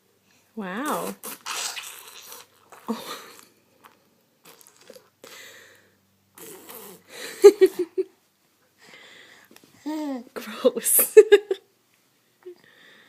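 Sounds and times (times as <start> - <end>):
baby spluttering mouth noises: 0.9 - 5.2, 6.3 - 7.1.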